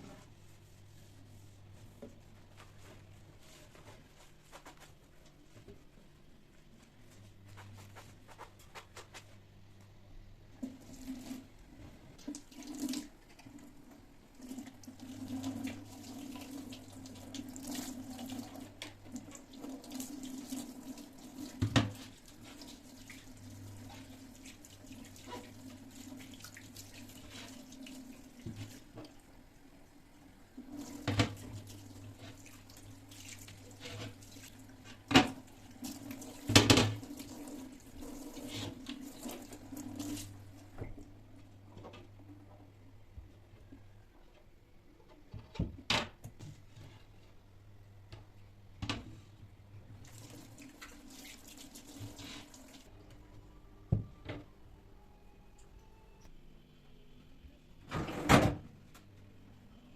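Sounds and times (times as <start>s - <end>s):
tap water running into sink: 12.2s - 29.2s, 30.6s - 41.1s.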